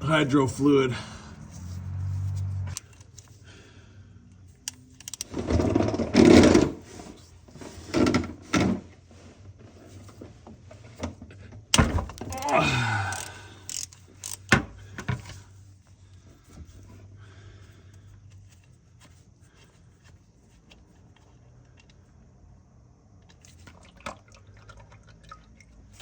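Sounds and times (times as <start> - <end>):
tools clunking and rattling: 5.0 - 6.9, 10.1 - 15.4.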